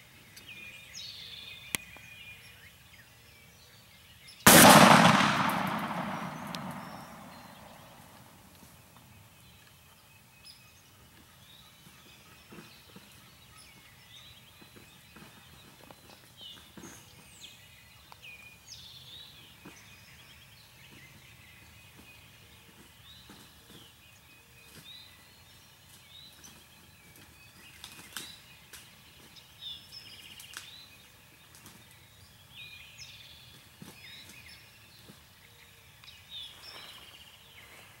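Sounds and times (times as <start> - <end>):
birds chirping: 4.5 - 8.2
background hiss: 4.5 - 8.8.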